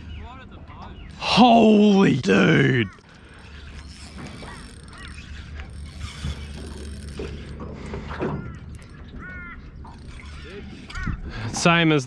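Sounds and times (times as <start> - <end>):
short squeaks: 0.9 - 11.4
fishing reel whirring and clicking: 1.0 - 11.3.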